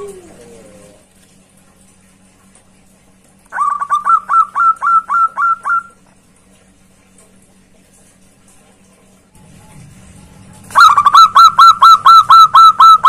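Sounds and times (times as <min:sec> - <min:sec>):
dove cooing: 0:00.0 - 0:01.0, 0:03.5 - 0:06.0, 0:10.7 - 0:13.0.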